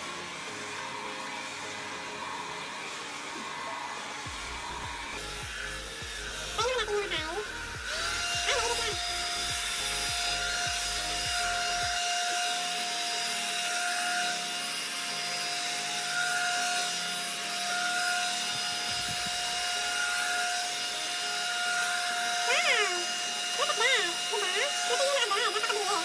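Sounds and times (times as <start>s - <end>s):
hair dryer brush whine: 0.0s - 26.0s
bristles rubbing through hair: 18.0s - 20.4s.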